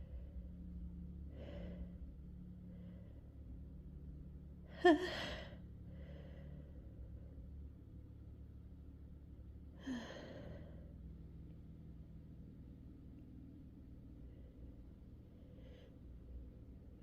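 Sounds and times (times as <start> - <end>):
woman breathing: 1.2 - 3.4, 4.8 - 7.1, 9.8 - 11.0.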